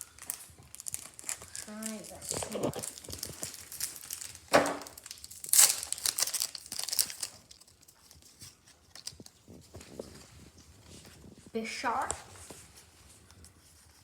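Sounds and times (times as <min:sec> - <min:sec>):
foil wrapper crinkling and tearing: 0:00.0 - 0:10.4.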